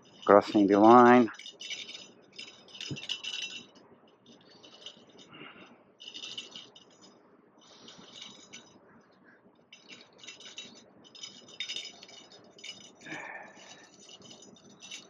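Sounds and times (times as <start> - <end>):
fishing reel ratcheting: 1.2 - 3.8, 6.0 - 7.1, 9.8 - 15.0.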